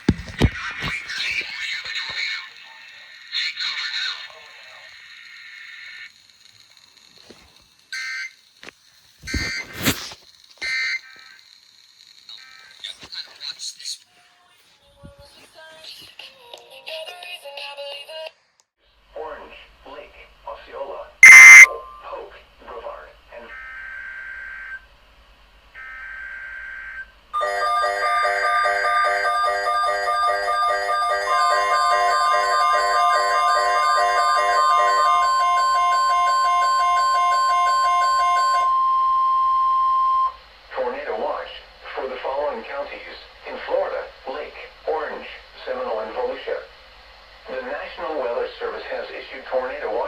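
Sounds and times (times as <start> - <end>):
buzzy digital data bursts: 21.2 - 21.7
pulsing electronic alert tone: 21.2 - 21.7.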